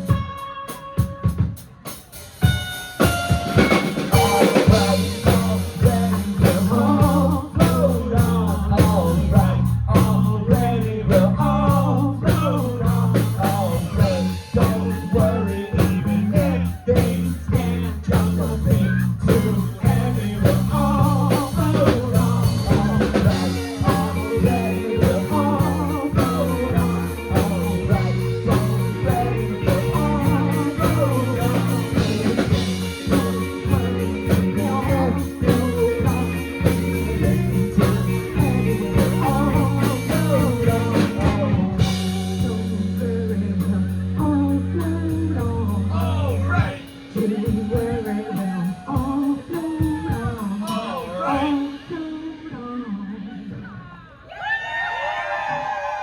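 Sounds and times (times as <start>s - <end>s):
wavering lead guitar melody: 0.0s - 7.9s, 18.7s - 48.8s
live rock band playing: 0.0s - 52.9s
repeating bass line: 2.4s - 51.8s.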